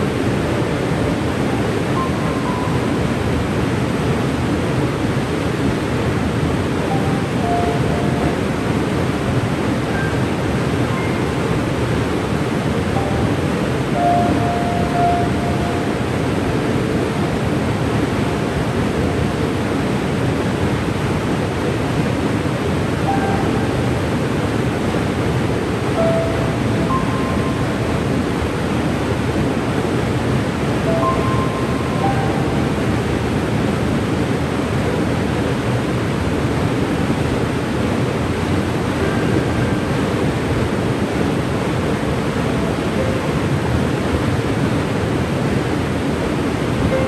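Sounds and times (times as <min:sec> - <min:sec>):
waterfall roaring: 0:00.0 - 0:47.0.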